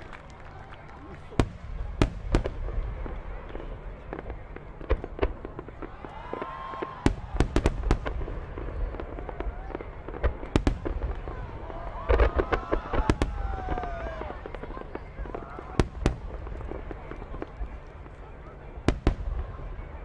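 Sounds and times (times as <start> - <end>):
fireworks bangs: 0.0 - 20.0.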